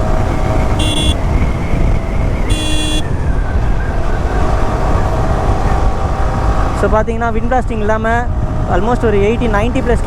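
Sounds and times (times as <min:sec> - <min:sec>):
motorcycle engine and road rumble: 0:00.0 - 0:10.0
vehicle horn beeping: 0:00.7 - 0:01.3, 0:02.5 - 0:03.2.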